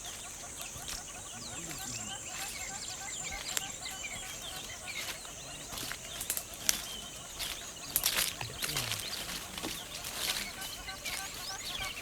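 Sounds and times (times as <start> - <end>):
wild birds chirping: 0.0 - 12.0
crackling: 5.1 - 12.0.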